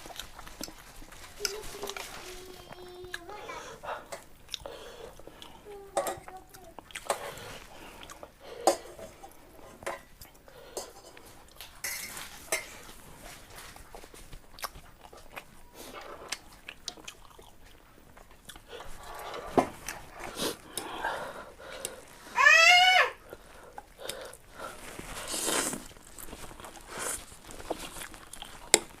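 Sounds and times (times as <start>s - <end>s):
person chewing noodles: 0.0s - 29.0s.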